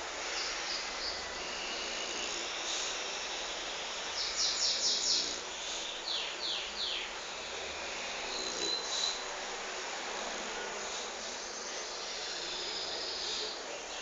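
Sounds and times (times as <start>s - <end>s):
steady background hiss: 0.0s - 14.0s
small birds chirping: 0.3s - 7.3s, 10.8s - 14.0s.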